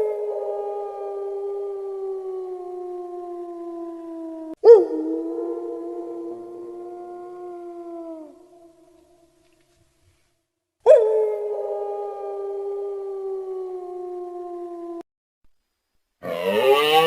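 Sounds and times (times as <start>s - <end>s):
animal howling: 0.0s - 8.8s, 16.2s - 17.0s.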